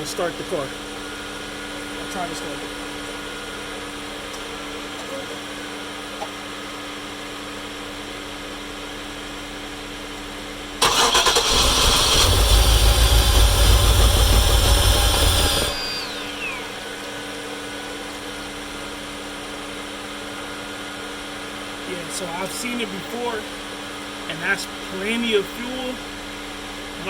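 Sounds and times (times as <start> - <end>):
engine cranking by starter: 10.8 - 16.8.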